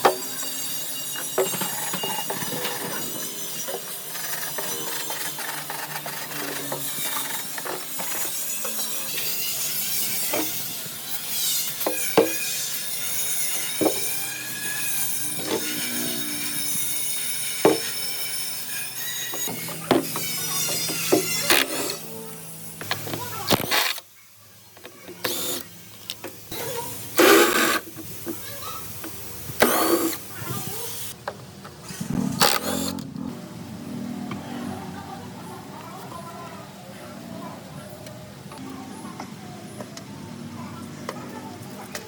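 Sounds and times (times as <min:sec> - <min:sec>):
metal clinks and scraping: 0:00.0 - 0:23.9.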